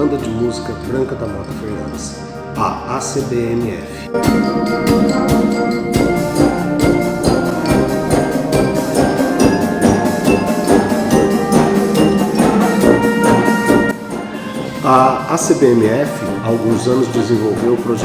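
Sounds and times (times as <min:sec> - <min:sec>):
quick steady percussion beat: 0:03.2 - 0:18.0
ringing mallet or bell notes: 0:04.1 - 0:15.3.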